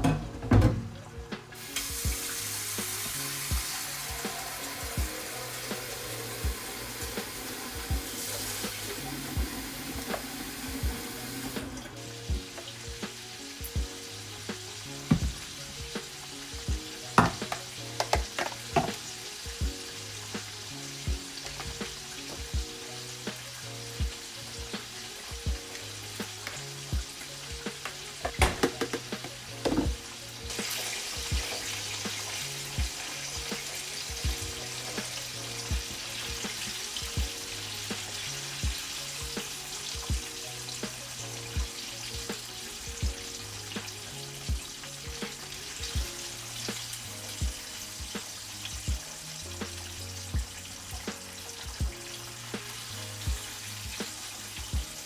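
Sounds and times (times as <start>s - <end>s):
background music with beat: 0.0s - 55.0s
chicken sizzling in hot oil: 1.0s - 55.0s
utensil knocking on pan: 17.2s - 19.0s, 27.8s - 30.0s.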